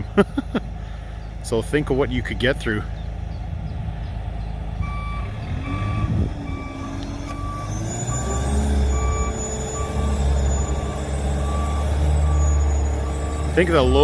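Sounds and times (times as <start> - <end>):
diesel engine drone: 0.0 - 14.0
reversing alarm beeping: 4.8 - 14.0.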